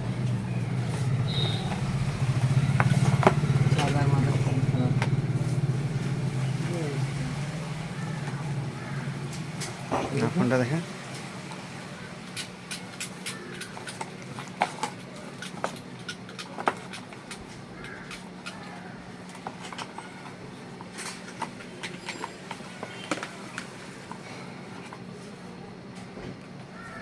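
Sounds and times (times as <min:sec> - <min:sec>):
steady low hum: 0:00.0 - 0:14.3.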